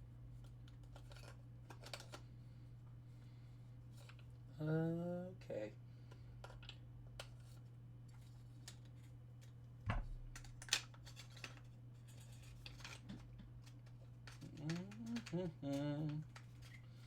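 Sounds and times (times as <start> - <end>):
small clicks and taps of parts: 6.1 - 9.5, 12.4 - 16.8.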